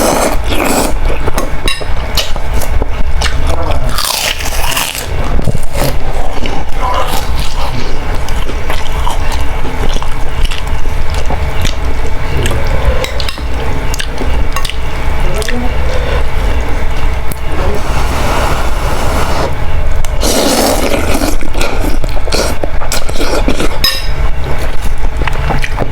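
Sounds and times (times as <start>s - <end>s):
slurping and chewing noodles: 0.0s - 1.2s, 2.2s - 13.3s, 17.8s - 23.8s.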